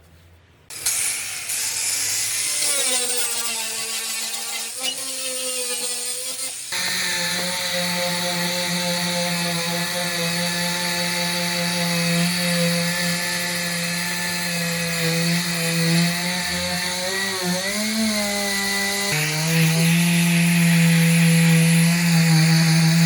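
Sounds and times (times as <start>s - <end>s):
power tool motor running: 0.7s - 23.0s.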